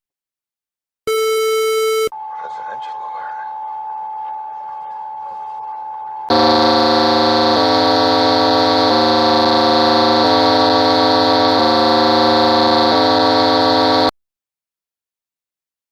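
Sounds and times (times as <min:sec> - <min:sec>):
emergency alert alarm: 0:01.1 - 0:02.4, 0:03.2 - 0:14.1.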